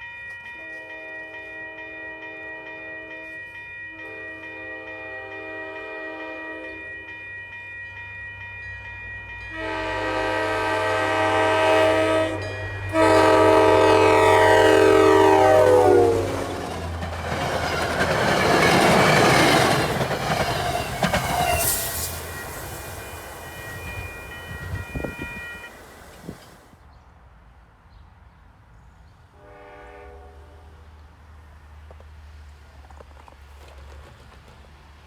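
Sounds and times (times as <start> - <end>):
train air horn: 0.6 - 7.1, 9.5 - 26.7, 29.3 - 31.0
train wheels rumbling on rail: 9.6 - 26.8
thin high ringing: 20.4 - 26.6.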